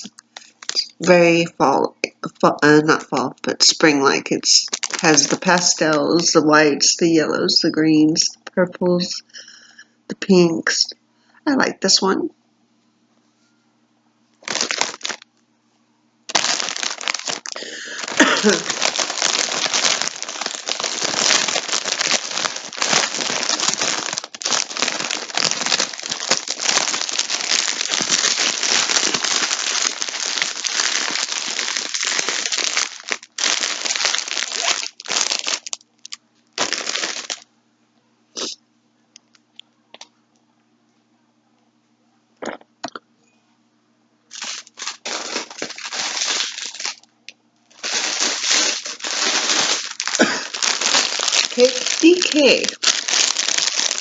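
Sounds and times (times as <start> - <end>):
packaging crinkling and rustling: 0.0 - 1.2, 4.6 - 6.4, 14.4 - 15.4, 16.3 - 37.4, 44.3 - 47.1, 47.7 - 54.0.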